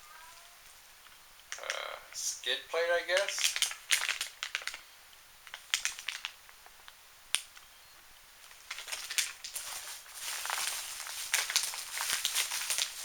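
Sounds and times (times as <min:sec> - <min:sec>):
plastic bags crinkling: 0:03.0 - 0:04.8, 0:05.5 - 0:06.4, 0:08.5 - 0:13.0.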